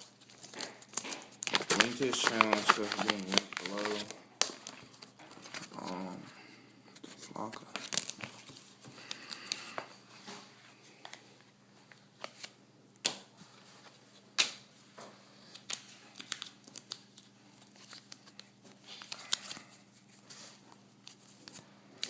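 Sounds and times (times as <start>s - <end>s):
packaging tearing and crinkling: 0.2s - 6.0s, 7.6s - 8.5s.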